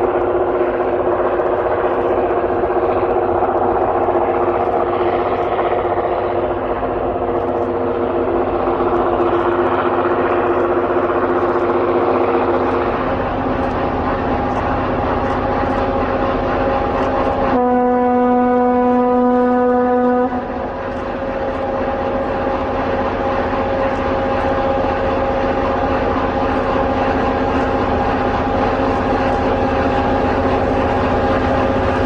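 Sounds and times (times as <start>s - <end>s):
freight train rushing: 0.0s - 32.0s.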